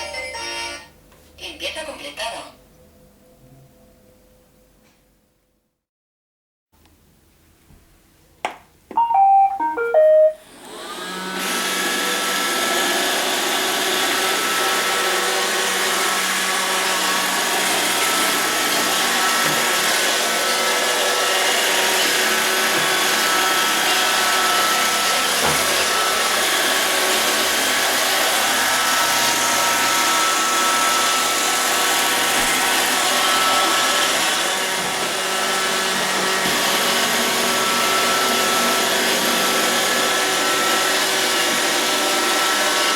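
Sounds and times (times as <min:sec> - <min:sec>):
electronic beeps stepping down: 0:09.0 - 0:10.4
vacuum suction motor whining: 0:10.4 - 0:42.9.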